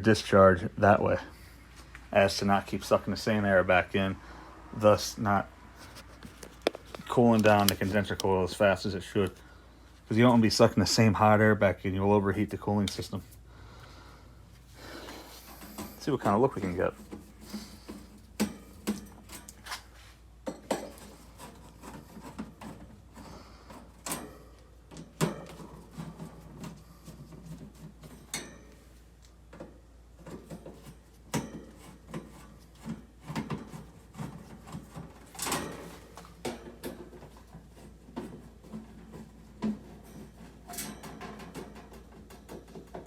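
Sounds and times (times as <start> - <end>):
hands working on metal housing: 5.8 - 9.4, 14.9 - 43.0.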